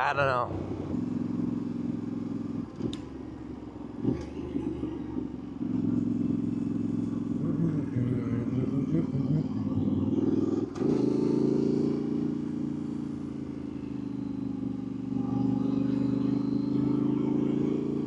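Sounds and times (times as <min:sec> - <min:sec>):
motorcycle engine running: 0:00.0 - 0:18.0
click: 0:02.8 - 0:03.1.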